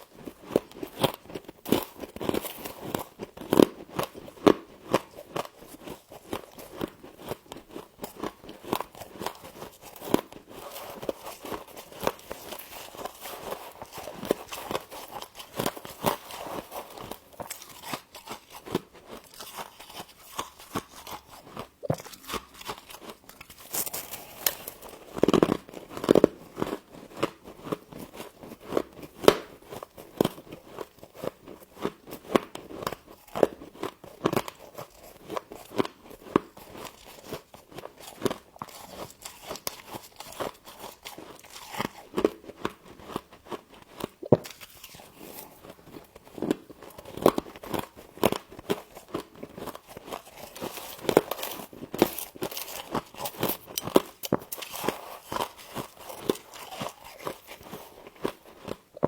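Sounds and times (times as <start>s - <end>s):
crunchy chewing of frost: 0.0s - 59.0s.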